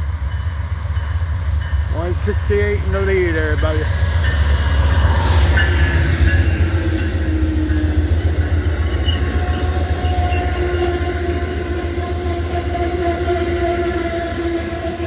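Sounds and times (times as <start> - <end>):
train rumbling: 0.0 - 15.0
wheels and brakes squealing: 8.4 - 15.0.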